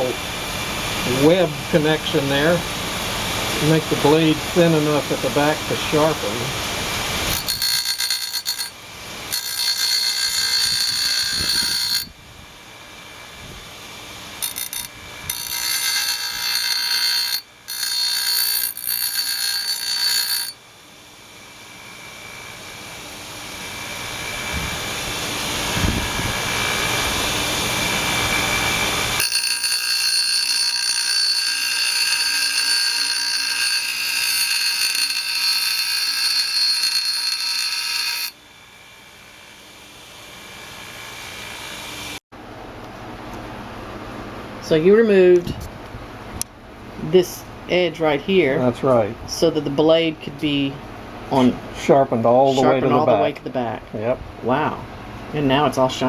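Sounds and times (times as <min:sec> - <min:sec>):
power grinder grinding metal: 0:07.2 - 0:12.1, 0:14.4 - 0:20.6, 0:21.7 - 0:38.4.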